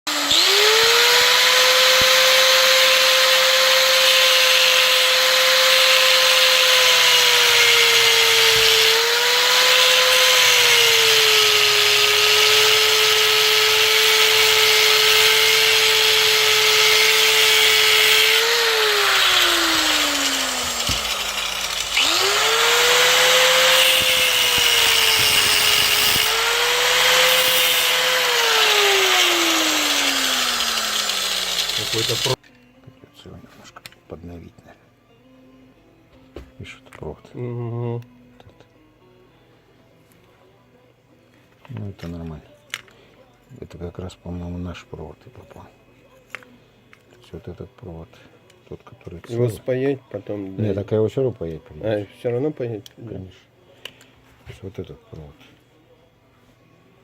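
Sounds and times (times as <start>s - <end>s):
handheld power tool whining: 0.1s - 32.4s.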